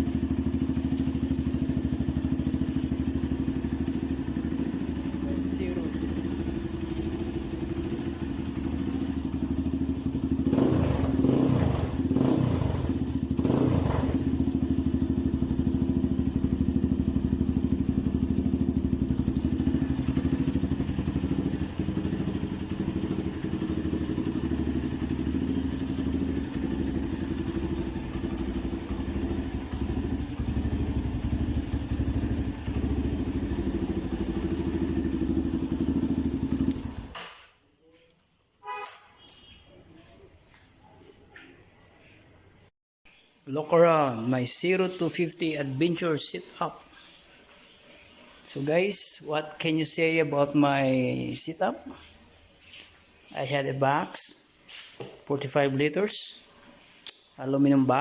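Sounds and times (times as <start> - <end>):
motorcycle engine revving and idling: 0.0 - 37.2.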